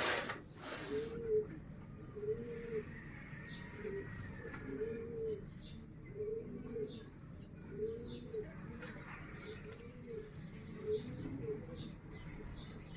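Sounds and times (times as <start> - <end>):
pigeon cooing: 0.0 - 12.7.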